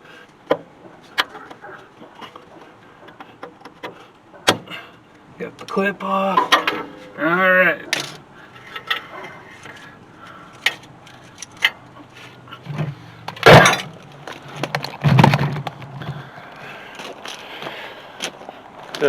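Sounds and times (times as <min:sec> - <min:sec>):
hand tools clicking and knocking: 0:00.4 - 0:12.1, 0:13.3 - 0:16.0
heavy metal clunk: 0:06.3 - 0:09.8, 0:12.7 - 0:16.2.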